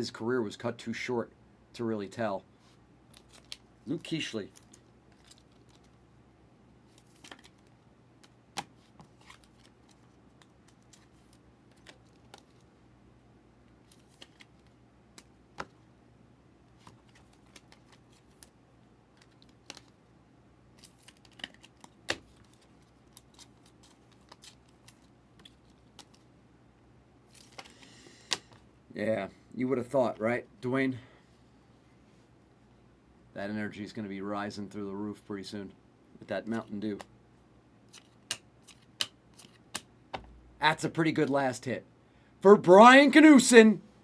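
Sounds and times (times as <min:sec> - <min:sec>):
low steady hum: 0:39.2 - 0:44.0.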